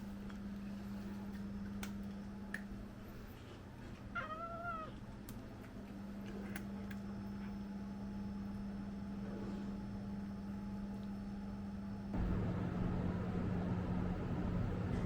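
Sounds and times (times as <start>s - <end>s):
steady low hum: 0.0s - 15.0s
cat meowing: 4.1s - 5.0s.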